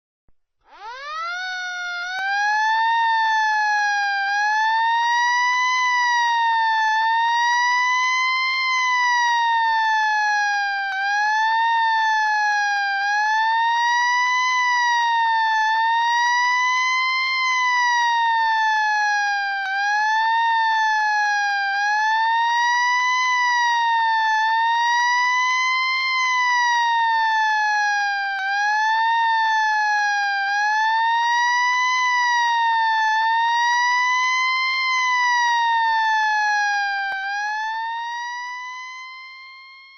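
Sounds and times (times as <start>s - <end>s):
fire truck siren wailing: 0.7s - 39.9s.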